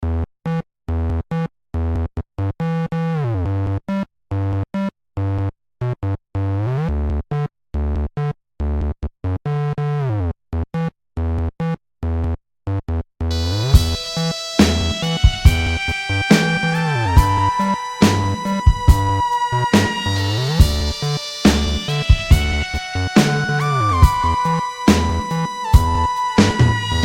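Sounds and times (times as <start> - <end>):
stuttering synthesizer music: 13.3 - 27.0.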